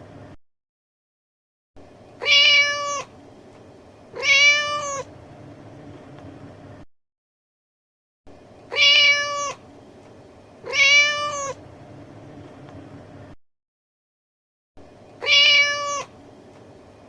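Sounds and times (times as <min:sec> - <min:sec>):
cat meowing: 0:02.2 - 0:03.1, 0:04.1 - 0:05.1, 0:08.7 - 0:09.6, 0:10.6 - 0:11.6, 0:15.2 - 0:16.1.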